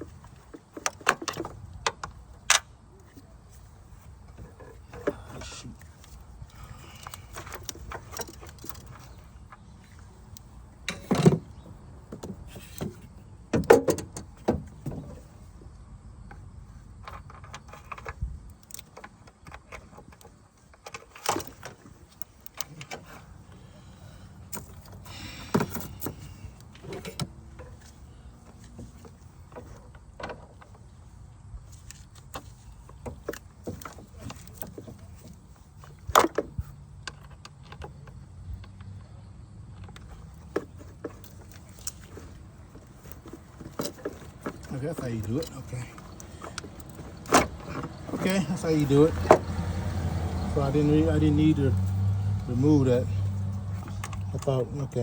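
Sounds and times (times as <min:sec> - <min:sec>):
clicks and knocks on car parts: 0:10.4 - 0:15.3.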